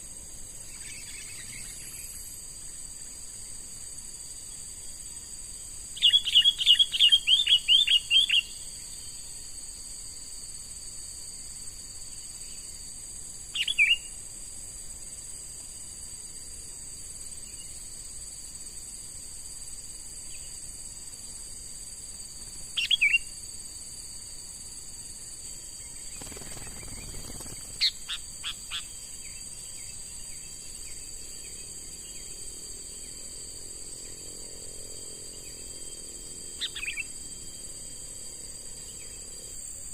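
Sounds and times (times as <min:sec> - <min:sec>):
high insect drone: 0:00.0 - 0:39.9
bird chirping: 0:06.0 - 0:08.6, 0:25.8 - 0:30.5, 0:36.6 - 0:37.1.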